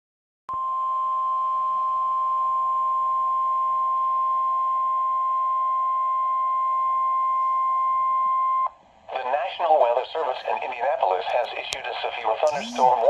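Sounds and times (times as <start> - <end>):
faint radio hiss: 8.7 - 13.0
steady high alarm tone: 12.5 - 13.0.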